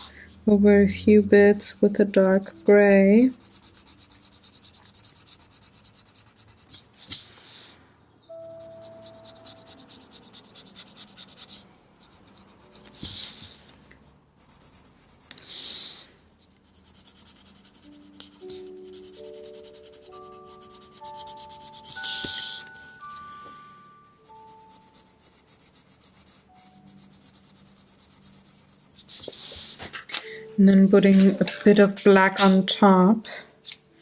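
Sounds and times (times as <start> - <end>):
faint background music: 0.0 - 34.0
marker scratching on paper: 1.1 - 7.3, 8.4 - 23.2, 24.1 - 29.7.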